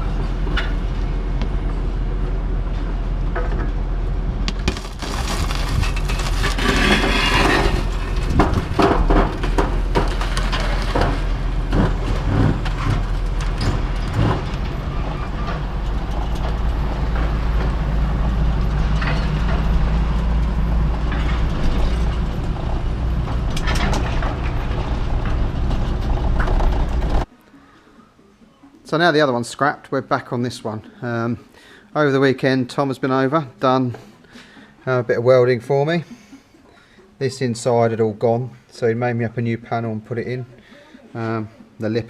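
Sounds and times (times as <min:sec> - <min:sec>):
metallic knocks and clatter: 0:05.8 - 0:14.8, 0:15.4 - 0:27.3
heavy vehicle engine running: 0:07.8 - 0:27.3.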